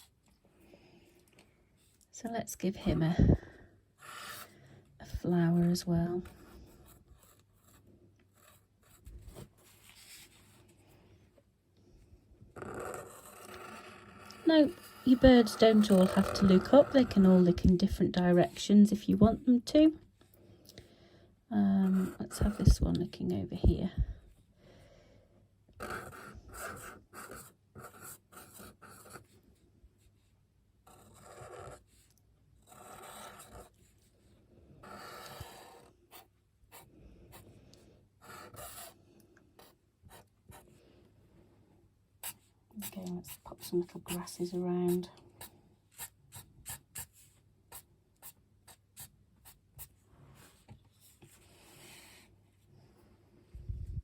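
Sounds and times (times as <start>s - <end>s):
paintbrush strokes on paper: 5.1s - 10.8s
brush strokes on paper: 8.4s - 10.8s.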